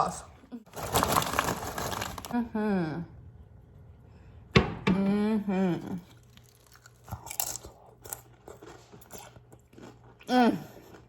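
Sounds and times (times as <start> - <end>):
chewing crisp chips: 6.0 - 11.0.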